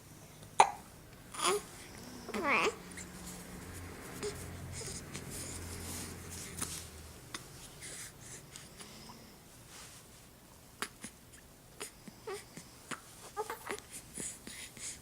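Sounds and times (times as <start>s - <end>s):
baby hiccuping: 0.6s - 1.6s
soft breathing: 1.4s - 15.0s.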